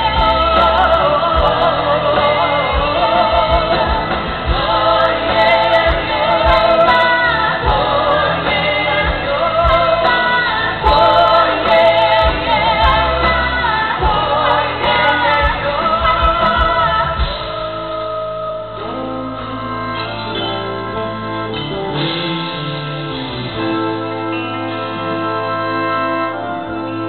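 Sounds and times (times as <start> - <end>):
woman singing with vibrato: 0.0 - 19.6
band accompaniment: 0.0 - 27.0
held keyboard chords: 0.0 - 27.0.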